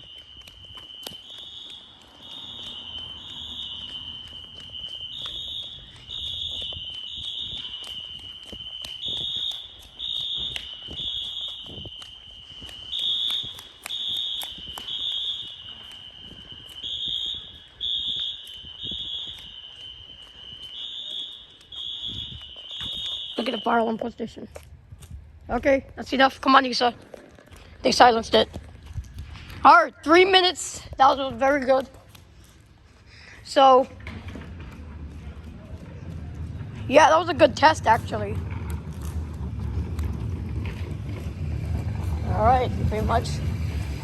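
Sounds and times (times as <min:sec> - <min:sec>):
fire alarm horn beeps: 0:00.0 - 0:24.5.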